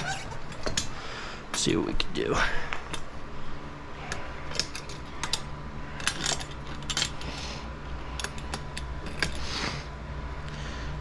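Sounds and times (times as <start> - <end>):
faint steady hum: 0.0 - 11.0
metallic clicks and clinks: 4.5 - 7.4, 8.2 - 9.4.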